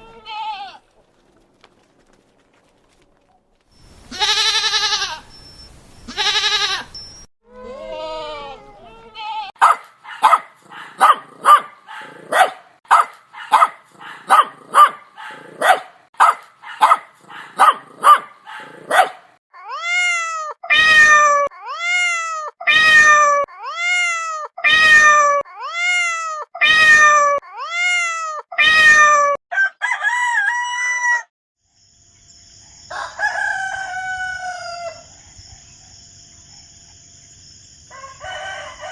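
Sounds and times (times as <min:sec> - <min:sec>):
short farm animal calls: 0:04.1 - 0:05.2
drawn-out animal calls: 0:04.1 - 0:05.4, 0:06.1 - 0:07.0.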